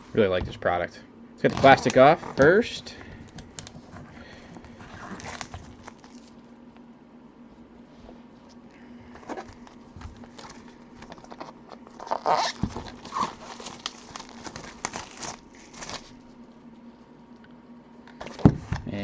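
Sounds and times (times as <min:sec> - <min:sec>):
plastic wrap crinkling: 0:01.4 - 0:02.6, 0:04.7 - 0:06.4, 0:09.3 - 0:16.2.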